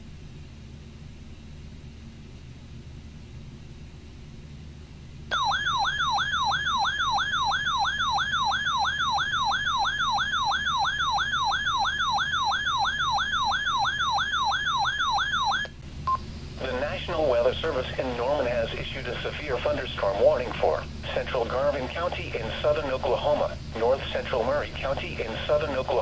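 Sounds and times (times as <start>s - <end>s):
electronic warble alarm: 5.3s - 16.2s.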